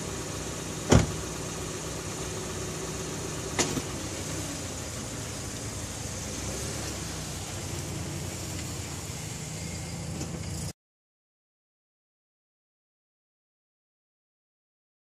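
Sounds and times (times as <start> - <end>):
car engine idling: 0.0 - 10.7.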